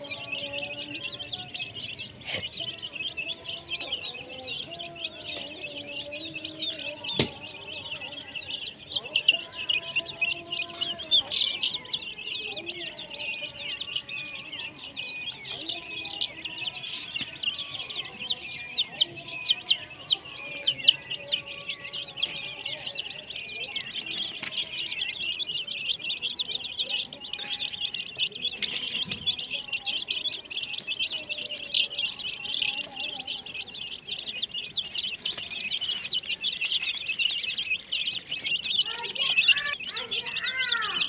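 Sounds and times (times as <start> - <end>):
baby chicks peeping: 0.0 - 41.0
hen clucking: 0.0 - 41.0.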